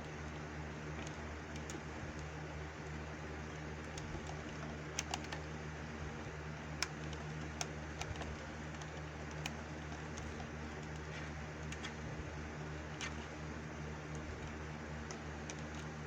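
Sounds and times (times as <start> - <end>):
steady low hum: 0.0 - 16.0
light clicks and taps: 3.8 - 5.5, 6.8 - 12.0.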